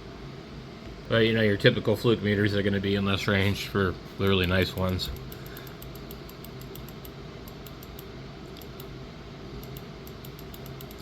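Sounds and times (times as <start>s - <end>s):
low background hum: 0.0s - 11.0s
rapid irregular clicking: 4.4s - 8.9s, 9.6s - 11.0s.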